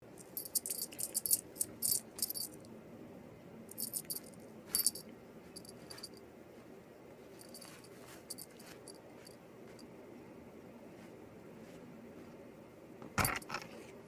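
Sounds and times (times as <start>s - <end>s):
light metallic jingling: 0.2s - 2.6s, 3.7s - 6.2s, 7.4s - 9.9s.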